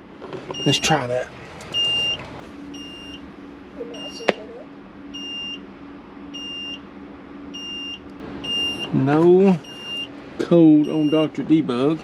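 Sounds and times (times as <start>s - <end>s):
steady low hum: 0.0s - 12.0s
computer short high beeps: 7.6s - 8.9s, 9.6s - 10.1s.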